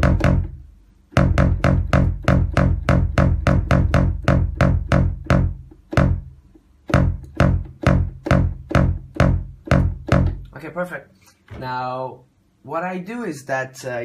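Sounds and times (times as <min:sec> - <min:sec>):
punchy synth bass notes: 0:00.0 - 0:10.5.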